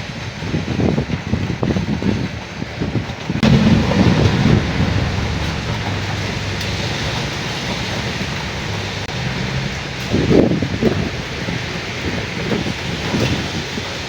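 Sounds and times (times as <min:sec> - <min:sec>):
low rumbling: 0:03.4 - 0:12.8
rain hiss: 0:03.4 - 0:14.0.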